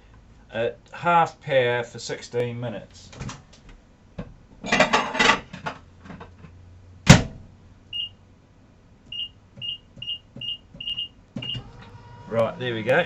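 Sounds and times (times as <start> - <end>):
plate scraping and rattling: 4.6 - 5.7
microwave keypad beeps: 8.0 - 8.2, 9.1 - 12.4.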